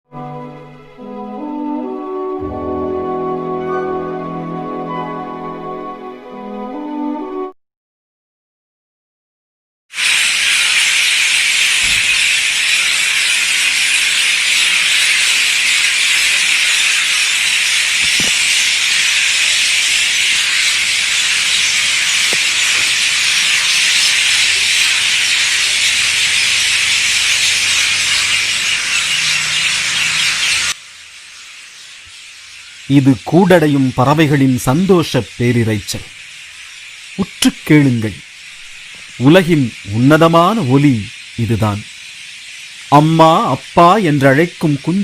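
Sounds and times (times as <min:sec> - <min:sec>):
flock of birds chattering: 0:10.0 - 0:45.0.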